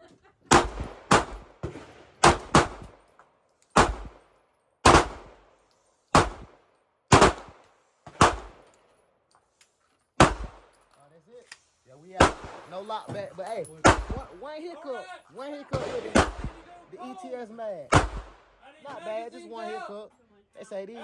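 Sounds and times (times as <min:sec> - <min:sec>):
pistol shots: 0:00.5 - 0:03.0, 0:03.8 - 0:05.5, 0:06.1 - 0:08.7, 0:10.2 - 0:10.7, 0:12.2 - 0:12.9, 0:13.8 - 0:14.4, 0:15.7 - 0:16.7, 0:17.9 - 0:18.6.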